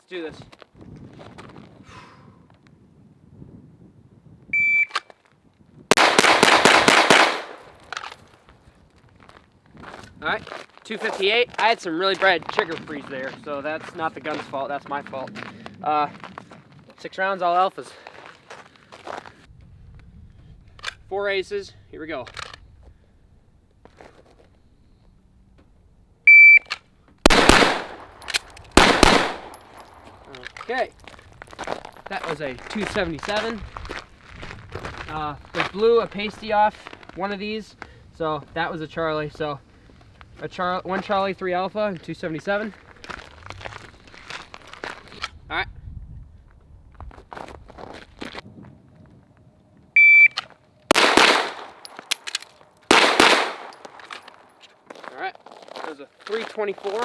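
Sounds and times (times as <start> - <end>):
shot timer beep: 4.6 - 5.0, 26.3 - 26.7, 50.0 - 50.4
pistol shots: 5.9 - 8.1, 27.2 - 30.7, 50.9 - 54.5.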